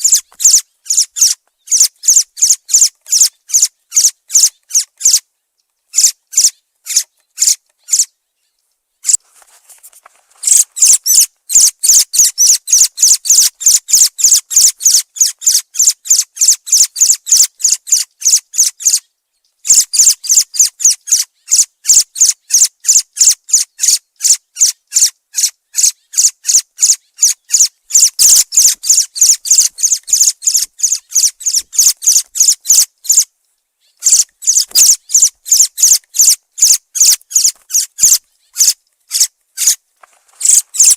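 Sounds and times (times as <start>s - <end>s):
thrush calling: 0.0s - 5.2s, 5.9s - 8.1s, 10.4s - 19.0s, 19.6s - 33.3s, 33.9s - 39.8s, 40.4s - 40.9s.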